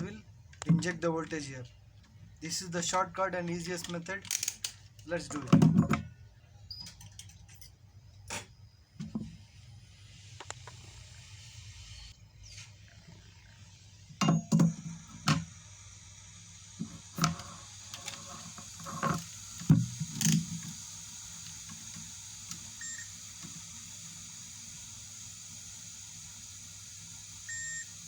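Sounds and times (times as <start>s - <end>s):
multimeter continuity beep: 22.8s - 23.2s, 27.5s - 28.0s.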